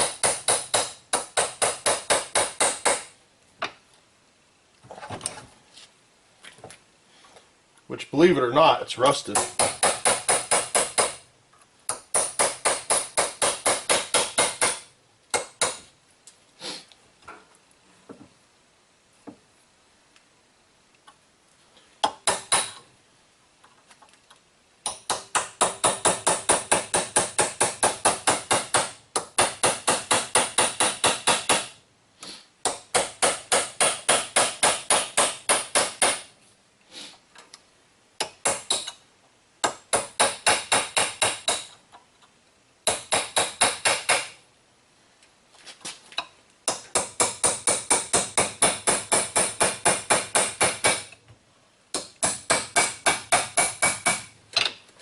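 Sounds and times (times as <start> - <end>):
hammer striking metal: 0.0 - 3.1, 12.1 - 15.8, 52.0 - 54.3.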